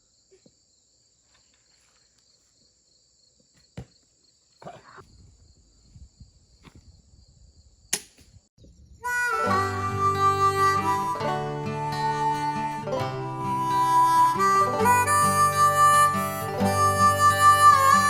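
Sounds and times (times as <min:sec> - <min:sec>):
insects trilling: 0:00.0 - 0:09.0.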